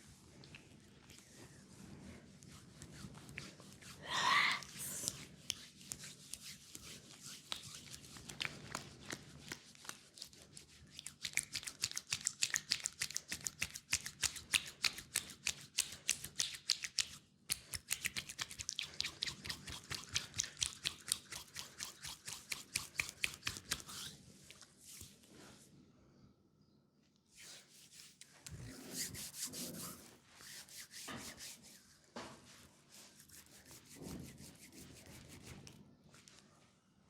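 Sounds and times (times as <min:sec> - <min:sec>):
hands tapping on skin: 0:11.0 - 0:23.8.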